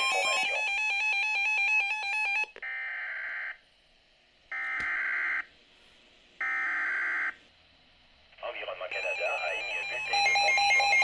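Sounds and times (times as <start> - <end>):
digital data tone bursts: 8.8 - 11.0.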